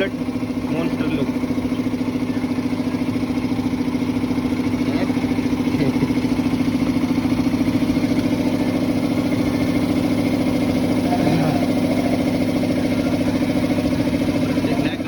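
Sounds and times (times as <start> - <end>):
motor humming steadily: 0.0 - 15.0.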